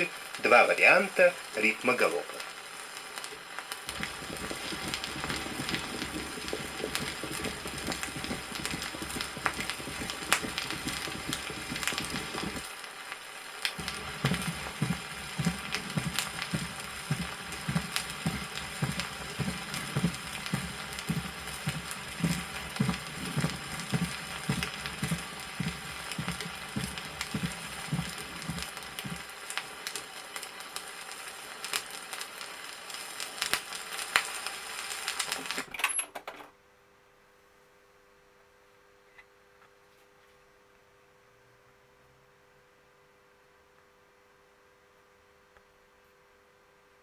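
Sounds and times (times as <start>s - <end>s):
vinyl surface crackle: 0.0s - 35.7s
heart sounds in gallop rhythm: 3.9s - 12.7s, 13.8s - 29.3s.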